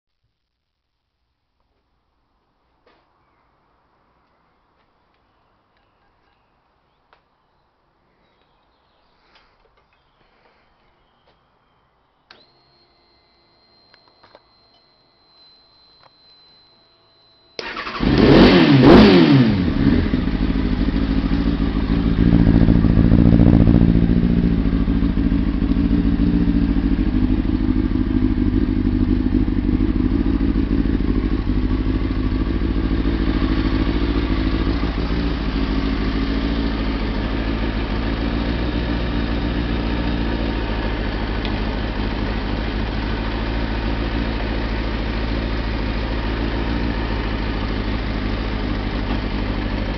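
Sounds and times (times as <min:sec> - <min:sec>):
motorcycle engine revving and idling: 0:17.6 - 0:49.9.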